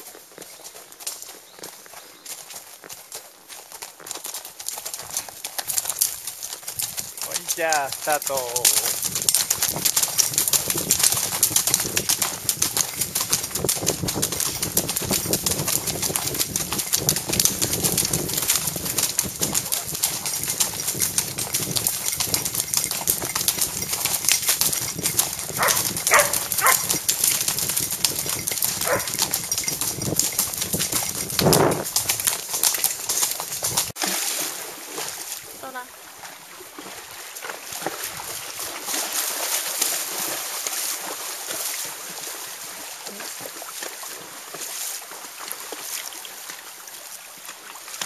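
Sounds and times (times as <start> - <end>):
horse hooves clattering: 0.0 - 34.0, 36.8 - 46.7
tack jostling: 24.8 - 27.1, 28.3 - 32.1.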